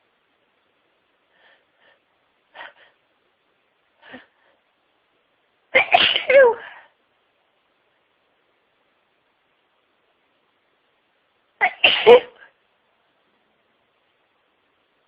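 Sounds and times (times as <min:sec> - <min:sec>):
person sneezing: 0:05.8 - 0:06.8, 0:11.6 - 0:12.5.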